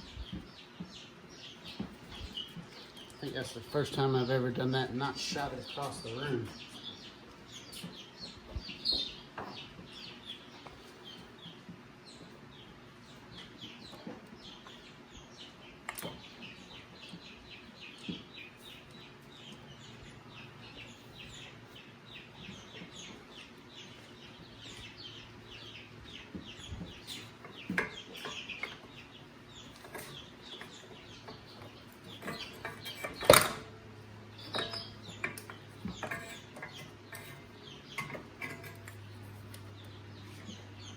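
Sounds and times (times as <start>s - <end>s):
birds chirping and clucking: 0.0s - 40.9s.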